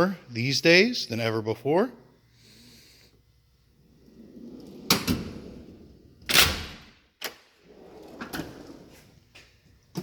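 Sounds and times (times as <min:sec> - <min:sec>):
metal drawers clacking shut: 0:04.7 - 0:05.6.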